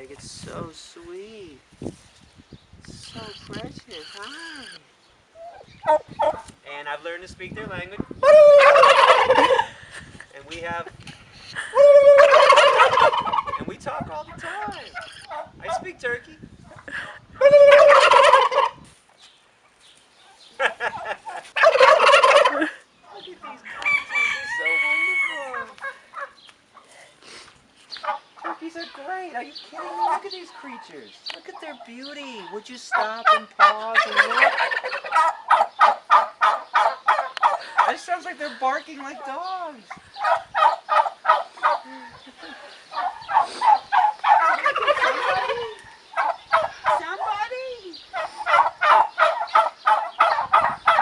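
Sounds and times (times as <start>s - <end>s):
turkeys gobbling: 5.4s - 6.5s, 8.2s - 9.8s, 11.4s - 13.7s, 14.4s - 15.8s, 16.7s - 18.8s, 20.6s - 27.0s, 28.0s - 29.0s, 29.7s - 51.0s.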